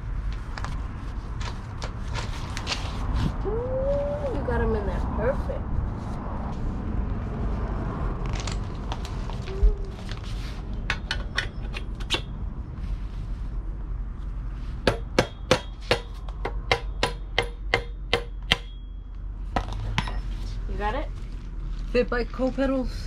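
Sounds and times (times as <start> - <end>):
metal clinks and taps: 19.5 - 20.4.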